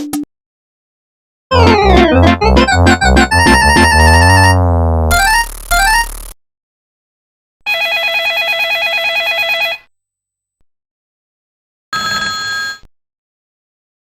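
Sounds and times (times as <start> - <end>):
short electronic tone: 1.5 - 6.4.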